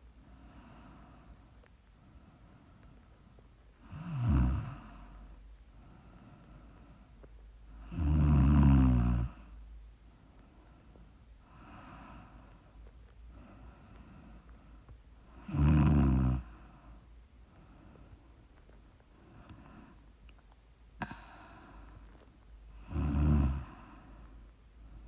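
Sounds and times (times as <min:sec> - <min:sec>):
soft breaths: 0:00.1 - 0:07.9, 0:09.3 - 0:25.0
person snoring: 0:03.9 - 0:05.0, 0:07.9 - 0:09.4, 0:15.4 - 0:16.6, 0:22.8 - 0:24.2.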